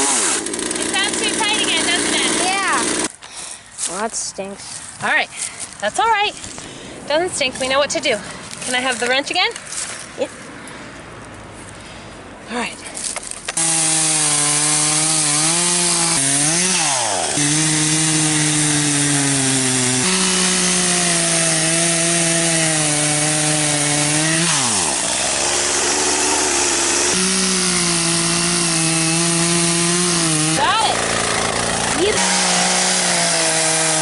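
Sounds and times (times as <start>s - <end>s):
chainsaw running at high speed: 0.0s - 3.1s, 13.5s - 34.0s.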